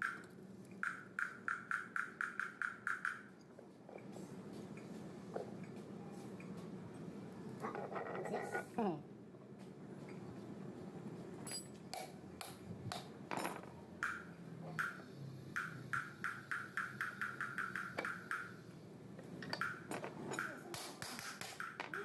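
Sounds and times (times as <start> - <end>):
hammer tapping on metal: 15.6 - 18.6, 19.4 - 22.0.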